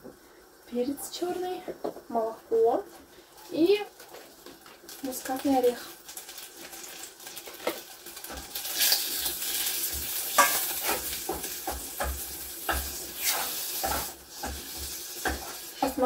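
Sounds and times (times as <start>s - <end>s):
butter sizzling in a pan: 0.7s - 16.0s
utensil knocking and scraping pan: 9.9s - 16.0s.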